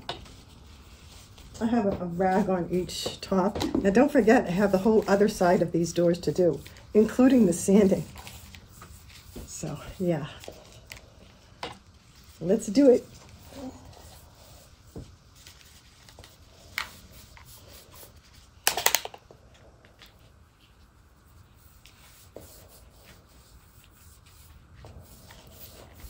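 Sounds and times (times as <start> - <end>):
scratchy rubbing: 21.3 - 26.0.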